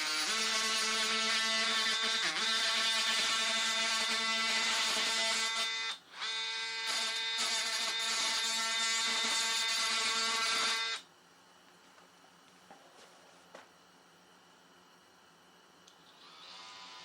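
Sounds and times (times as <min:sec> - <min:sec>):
oscillating multi-tool buzzing: 0:00.0 - 0:11.0, 0:16.0 - 0:17.0.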